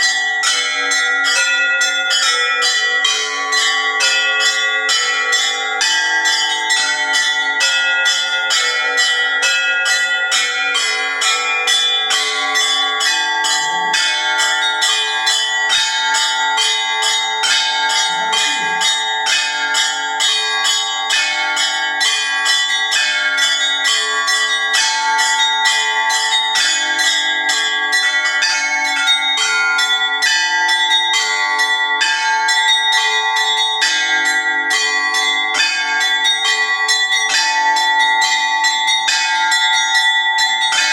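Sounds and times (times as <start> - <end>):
festive bell peal: 0.0 - 40.9.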